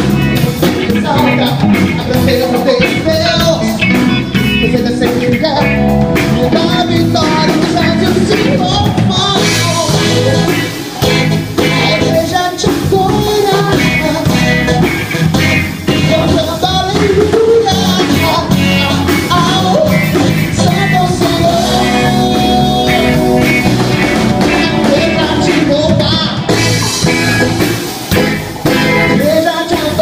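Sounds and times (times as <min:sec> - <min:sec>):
man singing: 0:00.0 - 0:27.6, 0:28.7 - 0:30.0
live rock band playing: 0:00.0 - 0:30.0.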